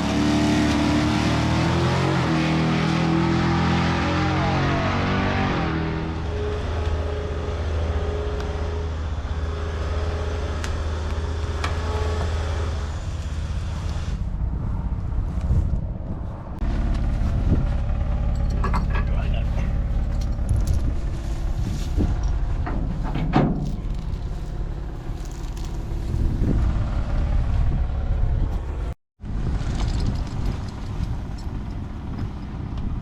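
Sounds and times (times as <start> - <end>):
vehicle engine running: 5.9 - 33.0.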